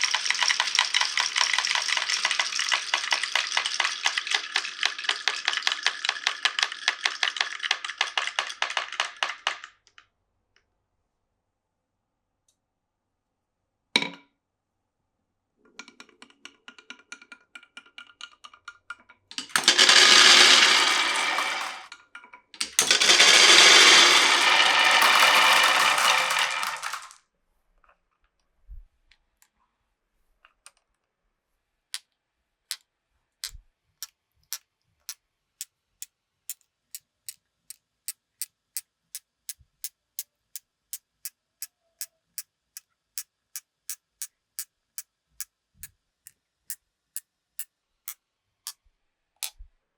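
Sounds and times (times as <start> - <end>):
marbles rolling rush: 0.0 - 9.5, 19.4 - 21.9, 22.6 - 27.2
marbles rattling clicks: 0.0 - 9.6, 19.4 - 21.9, 22.6 - 27.2.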